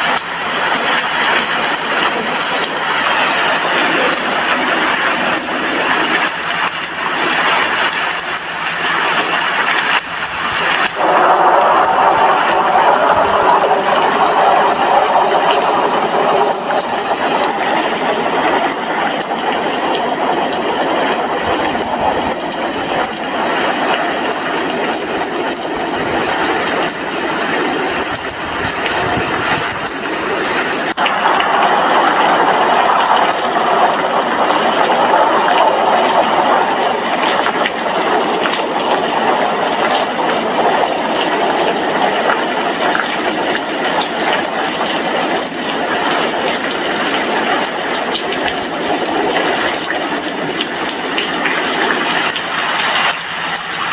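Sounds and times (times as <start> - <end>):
steady rain hiss: 0.0 - 53.9.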